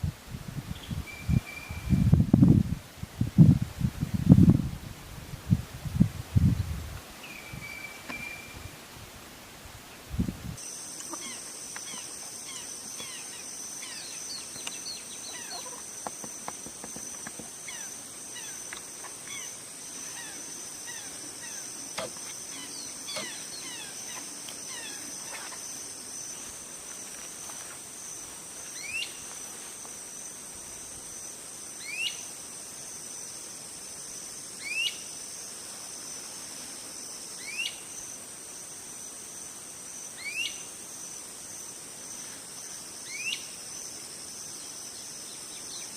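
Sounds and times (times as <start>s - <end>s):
insects droning: 0.0s - 45.9s
birds chirping: 10.6s - 26.0s.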